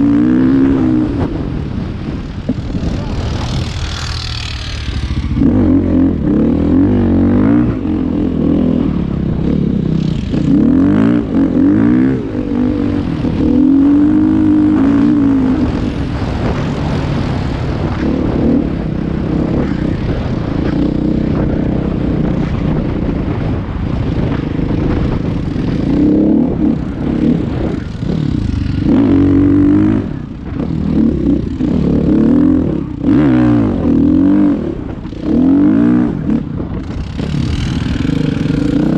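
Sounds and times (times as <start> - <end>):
engine revving: 0.0 - 38.9.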